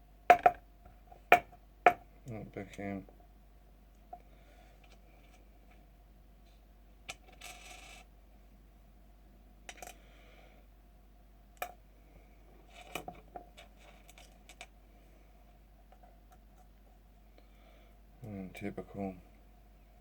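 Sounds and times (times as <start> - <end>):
small parts and tools clicking: 7.1 - 8.1, 9.7 - 10.0, 12.7 - 14.8.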